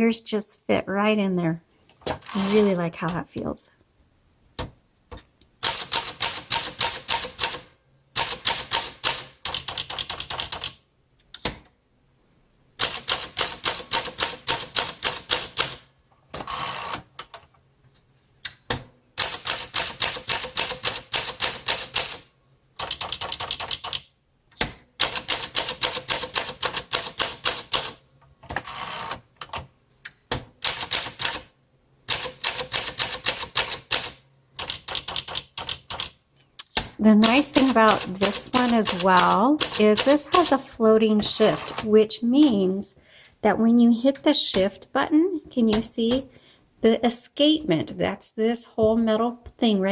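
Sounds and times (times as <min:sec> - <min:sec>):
typewriter carriage rattle: 0:05.6 - 0:10.8, 0:30.6 - 0:31.5, 0:32.1 - 0:36.1, 0:37.2 - 0:40.5
typewriter typebar strikes: 0:32.1 - 0:35.2.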